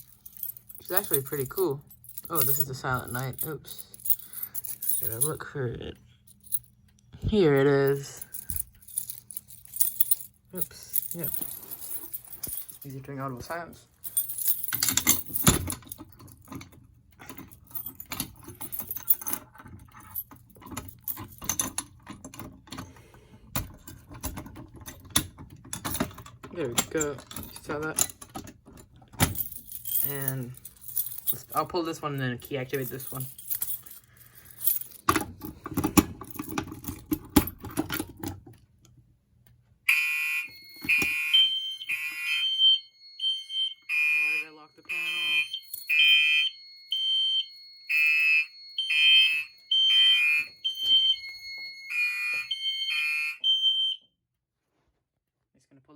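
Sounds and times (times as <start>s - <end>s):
keys jangling: 0.0s - 5.4s, 6.3s - 6.8s, 7.6s - 23.0s, 23.6s - 38.6s, 45.5s - 46.0s
fire alarm pull station clicks: 39.9s - 41.6s
higher alarm tone: 39.9s - 54.0s
fire alarm horns blasting: 39.9s - 54.1s.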